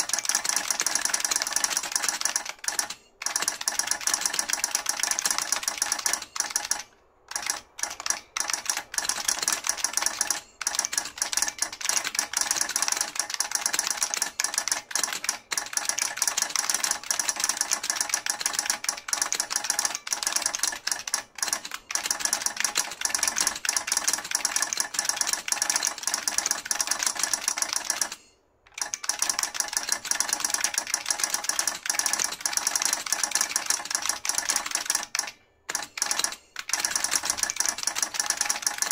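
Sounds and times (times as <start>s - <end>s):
keyboard typing clicks: 0.0s - 38.9s.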